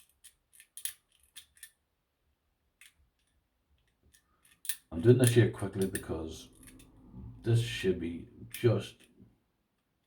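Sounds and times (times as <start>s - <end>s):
lock picking metallic clicks: 4.5s - 7.0s.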